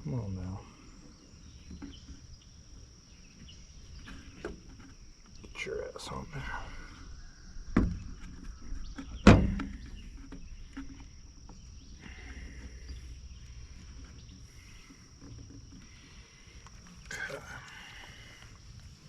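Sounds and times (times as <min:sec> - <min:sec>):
sharp knocks: 0:07.7 - 0:11.0.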